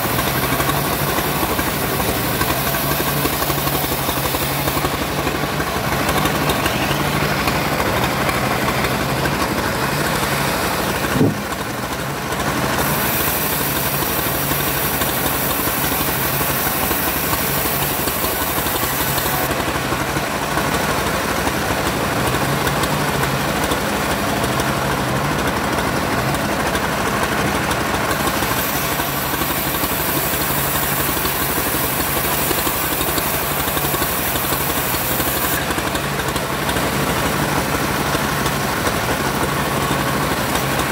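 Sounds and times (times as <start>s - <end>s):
bandsaw cutting wood: 0.0s - 24.7s, 25.6s - 40.9s
sharp knock: 11.1s - 11.6s.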